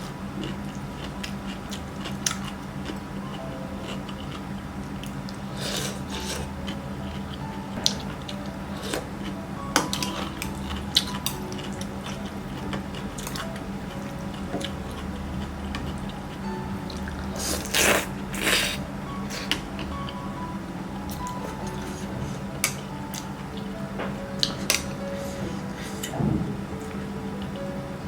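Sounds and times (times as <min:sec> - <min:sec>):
chewing and mouth noises: 0:00.0 - 0:20.2
low hum: 0:02.5 - 0:28.0.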